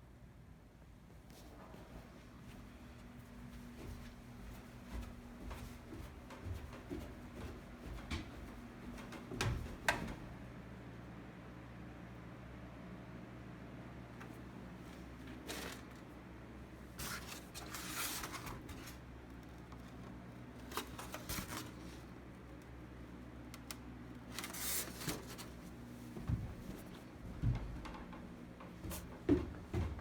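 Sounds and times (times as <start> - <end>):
steady low hum: 0.0 - 15.3, 21.4 - 30.0
rustling and handling noises: 14.2 - 16.2, 16.8 - 22.8, 23.5 - 30.0.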